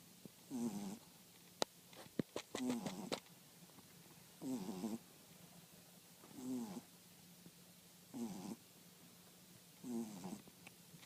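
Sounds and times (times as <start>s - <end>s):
dog snoring: 0.5s - 1.1s, 2.6s - 3.2s, 4.4s - 5.0s, 6.3s - 6.9s, 8.1s - 8.6s, 9.8s - 10.4s.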